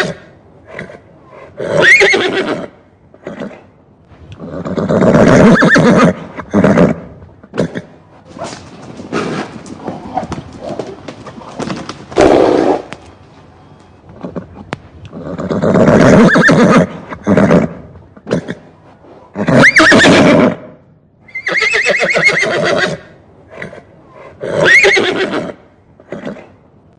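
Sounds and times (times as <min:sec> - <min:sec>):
horse neighing: 0:01.6 - 0:03.6, 0:04.4 - 0:08.0, 0:14.2 - 0:18.7, 0:19.4 - 0:20.6, 0:21.3 - 0:23.8, 0:24.4 - 0:26.5.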